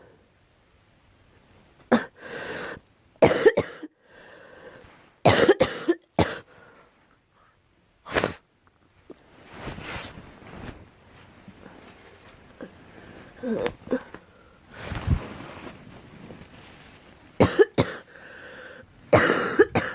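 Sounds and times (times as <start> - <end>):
girl coughing: 3.2 - 3.9, 5.3 - 6.5, 17.4 - 18.1, 19.1 - 19.9
breathy noise: 11.5 - 16.8, 17.9 - 18.9.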